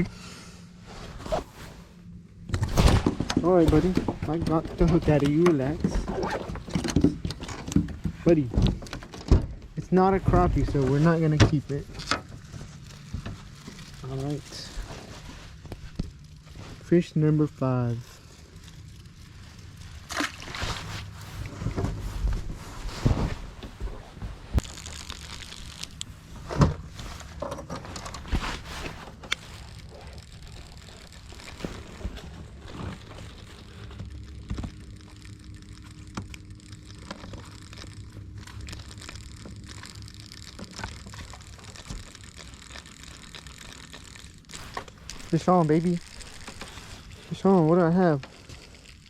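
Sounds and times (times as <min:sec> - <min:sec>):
handling knocks and rustles: 0:02.4 - 0:18.2, 0:19.4 - 0:25.1, 0:25.9 - 0:35.0.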